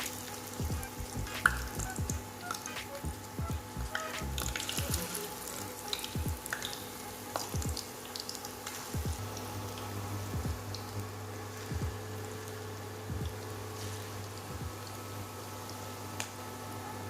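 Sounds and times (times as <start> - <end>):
oil popping and crackling: 0.0 - 16.8
chicken deep-frying in oil: 0.0 - 17.0.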